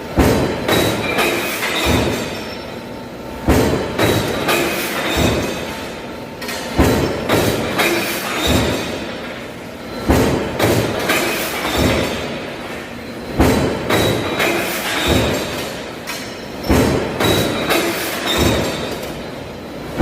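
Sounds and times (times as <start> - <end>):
press machine heavy thumps: 0.1 - 2.4, 3.4 - 5.9, 6.6 - 9.2, 9.9 - 12.6, 13.3 - 15.8, 16.6 - 19.1.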